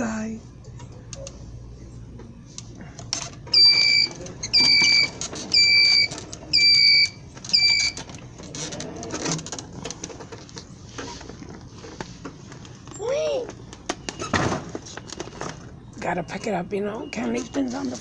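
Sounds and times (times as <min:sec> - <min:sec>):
electronic beeps: 0:03.6 - 0:08.0.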